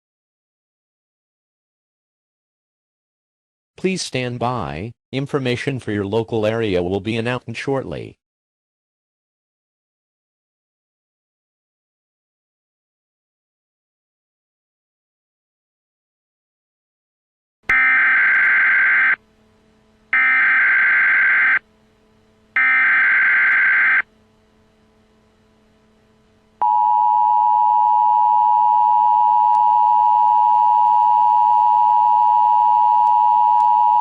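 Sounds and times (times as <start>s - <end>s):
digital data tone bursts: 20.2s - 21.6s, 22.6s - 24.0s.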